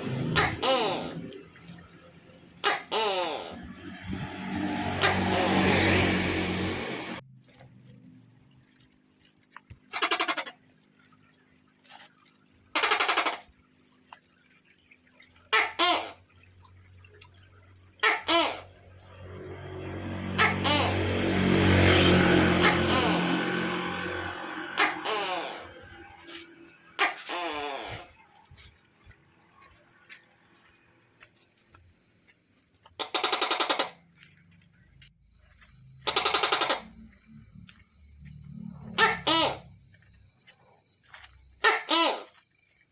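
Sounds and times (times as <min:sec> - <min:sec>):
gecko rattling call: 0:09.8 - 0:16.4, 0:17.7 - 0:31.5, 0:32.9 - 0:34.2, 0:35.3 - 0:42.9.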